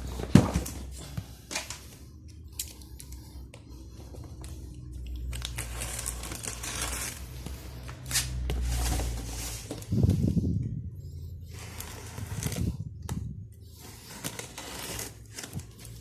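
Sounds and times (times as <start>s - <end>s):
cardboard and tape tearing: 5.3s - 7.3s, 14.1s - 15.8s.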